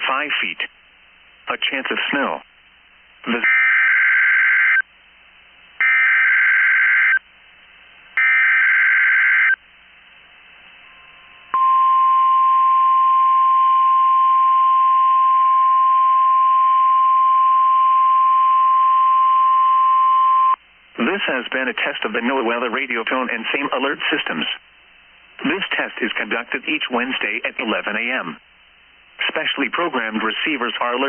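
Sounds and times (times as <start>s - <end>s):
steady warning alarm tone: 8.2s - 9.6s.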